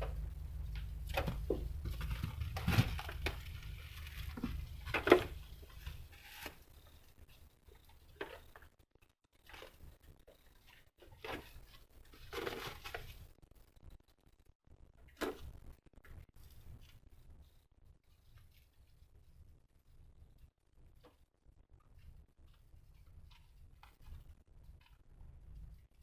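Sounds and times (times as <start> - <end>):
soft knocks: 0.0 - 6.1
low rumble: 0.0 - 6.2
rustling and scratching: 0.0 - 8.8, 9.4 - 13.4, 15.2 - 19.6, 21.8 - 26.0.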